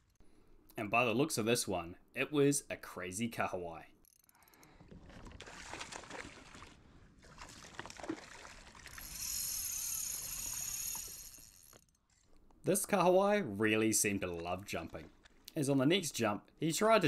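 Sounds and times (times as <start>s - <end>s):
water splashing and sloshing: 4.7s - 11.8s, 14.2s - 15.5s.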